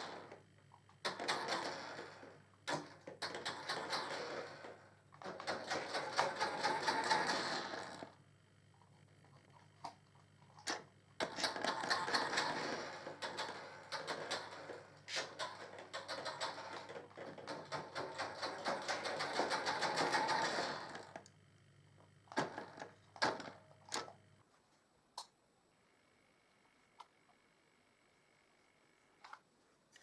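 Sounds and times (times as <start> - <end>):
toy car motor and gears whirring: 3.4 - 8.2.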